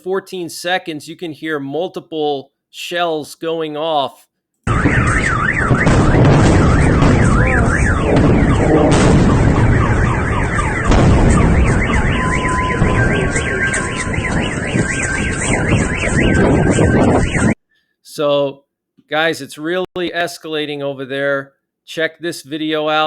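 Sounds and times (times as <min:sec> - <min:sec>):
car alarms warbling: 0:04.7 - 0:17.6
rumbling booms of shells: 0:04.7 - 0:17.6
sharp cracks: 0:04.7 - 0:17.6
steady alarm tones: 0:04.7 - 0:17.6.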